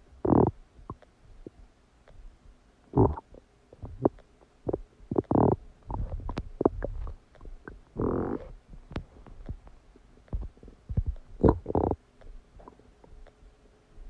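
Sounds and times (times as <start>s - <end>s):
stomach gurgling: 0.2s - 1.6s, 2.9s - 9.6s, 10.3s - 13.3s
bubbling stomach rumble: 2.9s - 9.6s, 10.4s - 12.0s.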